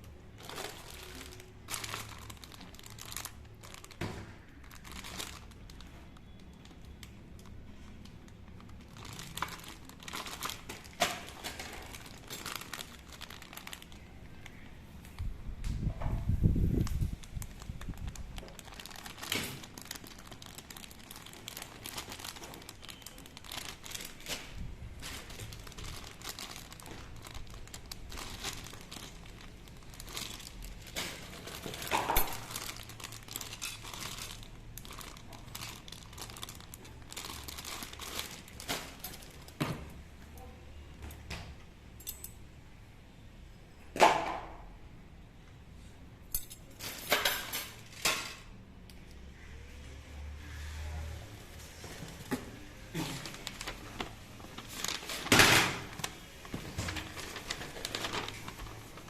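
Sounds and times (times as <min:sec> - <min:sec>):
plastic packaging crinkling: 0:00.0 - 0:15.3, 0:16.4 - 0:39.6, 0:51.6 - 0:59.0.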